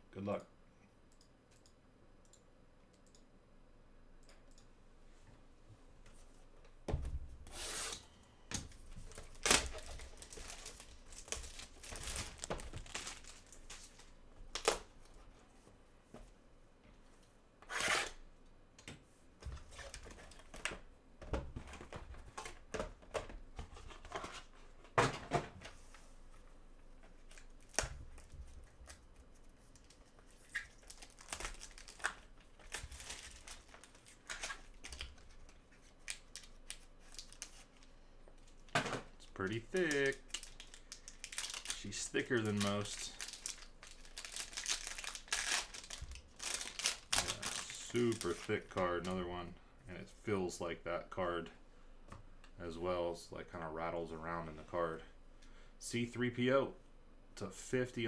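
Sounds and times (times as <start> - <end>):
packaging tearing and crinkling: 9.0 - 14.9, 29.8 - 35.3, 36.0 - 37.8, 39.5 - 48.6.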